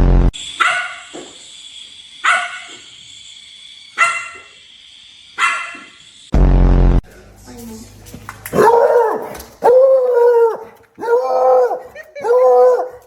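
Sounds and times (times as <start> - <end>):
dog barking: 0.6 - 1.1, 2.2 - 2.8, 4.0 - 4.5, 5.4 - 5.9, 8.5 - 13.0.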